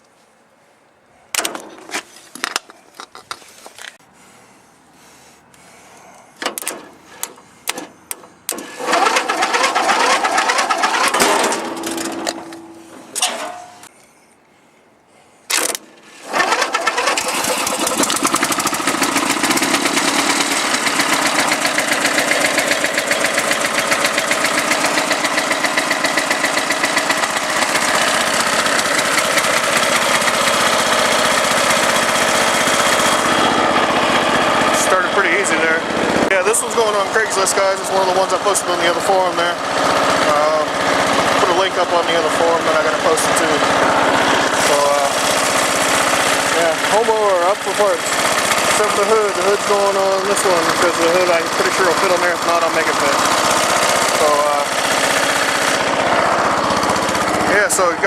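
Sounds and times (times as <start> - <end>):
clicks and clatters: 6.4 - 9.2, 15.5 - 16.1
lawn mower engine running: 6.4 - 13.9, 15.5 - 58.0.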